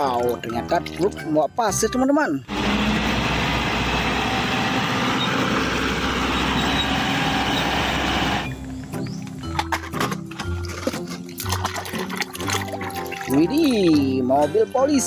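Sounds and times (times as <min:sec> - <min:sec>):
truck engine running: 0:02.5 - 0:09.7.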